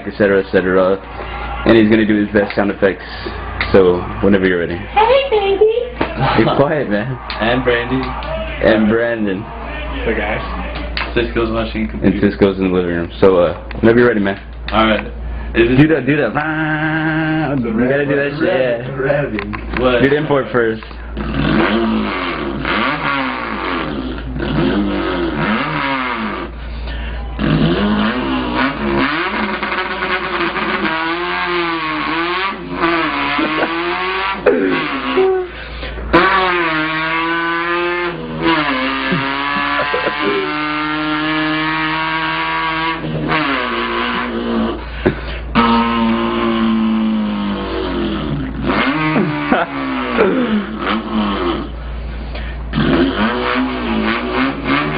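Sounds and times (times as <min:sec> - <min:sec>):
man imitating engine revving: 0:06.1 - 0:09.5, 0:15.6 - 0:54.9.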